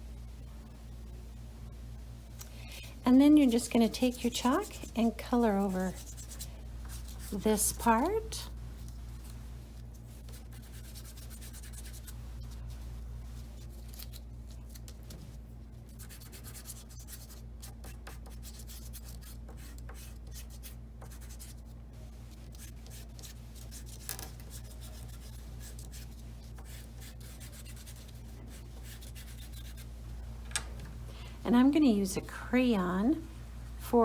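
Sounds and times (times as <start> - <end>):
steady low hum: 0.0 - 34.0
chalk rubbing on paper: 4.1 - 7.5, 10.1 - 12.8, 15.9 - 21.6, 22.5 - 29.9.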